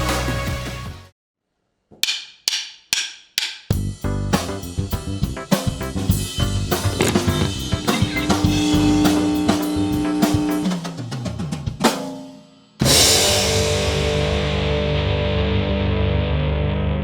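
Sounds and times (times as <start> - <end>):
drum kit beat: 2.0 - 14.3
held notes: 6.7 - 10.8
loud sustained band chord: 7.0 - 10.7.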